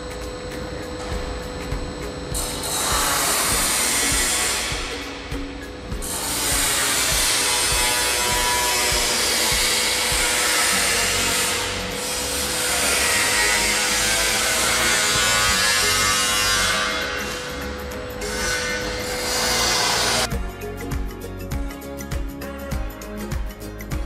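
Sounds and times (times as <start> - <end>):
machine hum: 0.0 - 20.3
grinding rubbing hiss: 1.9 - 20.3.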